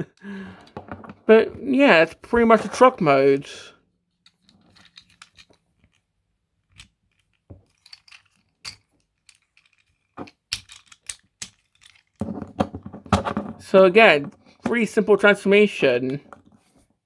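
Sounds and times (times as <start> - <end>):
plastic toy clicking: 9.2 - 12.2.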